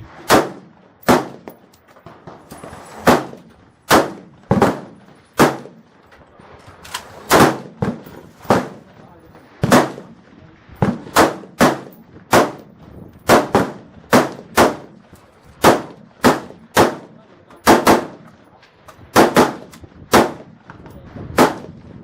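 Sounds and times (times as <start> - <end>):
gunshots with echo: 0.0 - 1.5, 2.1 - 5.9, 7.3 - 10.2, 10.8 - 15.0, 15.6 - 18.3, 19.1 - 20.6, 21.3 - 21.9.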